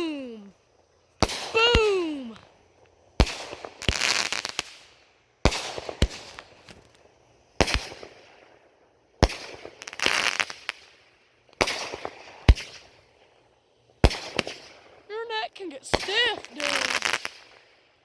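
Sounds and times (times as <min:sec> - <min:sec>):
fireworks banging: 0:01.2 - 0:02.4, 0:14.1 - 0:17.4
fireworks fizz and crackle: 0:01.2 - 0:18.0.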